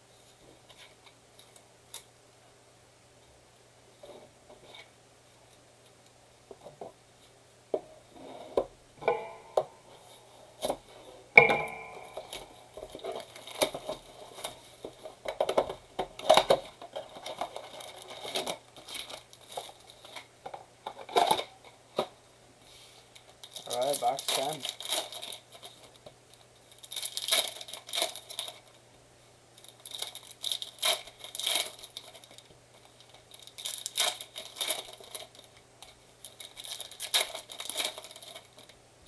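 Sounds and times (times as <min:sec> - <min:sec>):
plastic and cardboard packaging tearing: 0:15.5 - 0:20.3, 0:23.4 - 0:26.0, 0:26.7 - 0:28.7, 0:29.6 - 0:35.6, 0:36.2 - 0:38.8.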